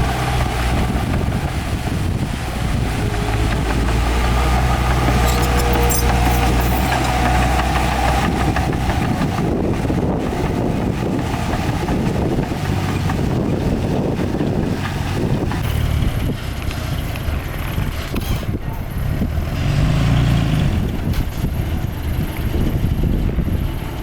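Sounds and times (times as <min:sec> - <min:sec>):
heavy diesel engine running: 0:00.0 - 0:24.0.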